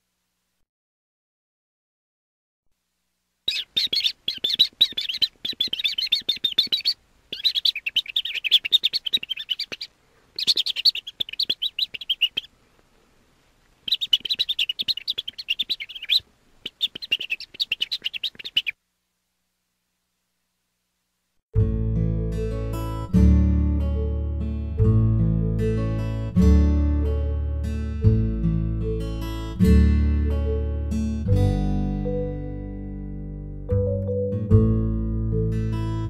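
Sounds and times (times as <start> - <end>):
baby chick chirping: 3.5 - 12.5, 13.9 - 18.8.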